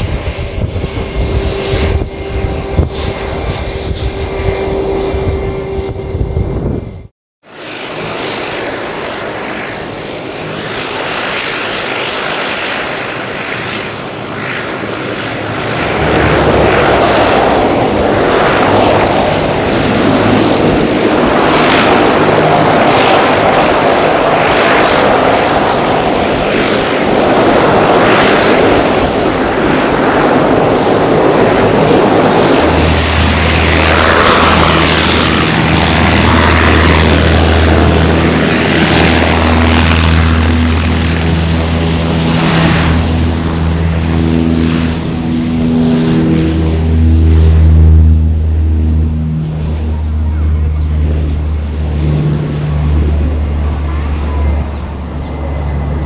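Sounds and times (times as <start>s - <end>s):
deep low rumble: 0.0s - 7.1s
propeller airplane engines: 0.0s - 56.0s.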